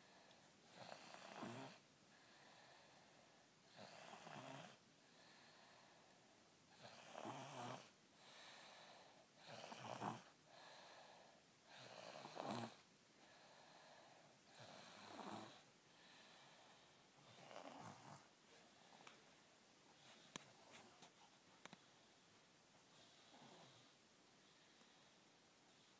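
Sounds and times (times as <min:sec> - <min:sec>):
person snoring: 0:00.7 - 0:01.8, 0:03.7 - 0:04.8, 0:06.8 - 0:07.9, 0:09.4 - 0:10.3, 0:11.7 - 0:12.8, 0:14.5 - 0:15.6
soft breathing: 0:02.1 - 0:04.0, 0:05.0 - 0:06.9, 0:08.1 - 0:25.9.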